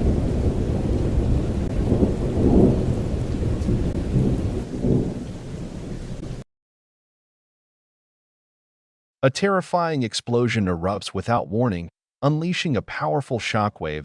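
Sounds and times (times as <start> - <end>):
thunder rumbling: 0.0 - 6.4.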